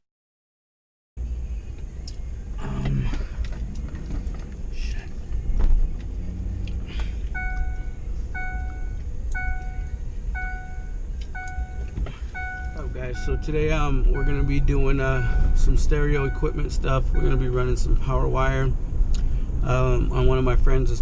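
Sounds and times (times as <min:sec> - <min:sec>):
car engine and road rumble: 0:01.2 - 0:21.0
car warning chime dinging: 0:07.3 - 0:18.5.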